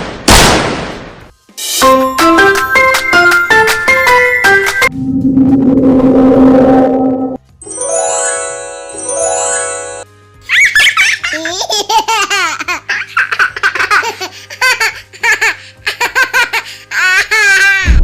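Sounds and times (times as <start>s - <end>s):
bright rising chime: 4.2s - 10.0s
high-pitched giggling laughter: 10.5s - 17.7s.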